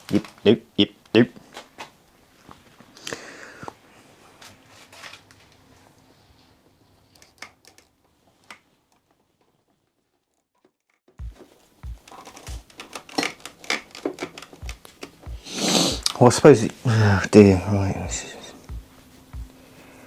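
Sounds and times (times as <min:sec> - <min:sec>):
metal parts clicking: 0:12.1 - 0:15.3
short low thumps: 0:18.1 - 0:19.6.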